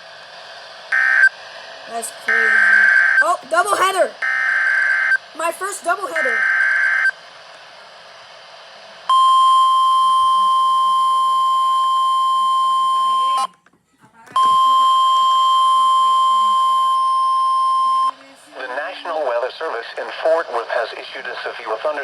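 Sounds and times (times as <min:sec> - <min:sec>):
steady single-pitch alarm tone: 0:00.9 - 0:01.4, 0:02.2 - 0:03.4, 0:04.2 - 0:05.2, 0:06.0 - 0:07.2, 0:09.1 - 0:13.5, 0:14.4 - 0:18.1.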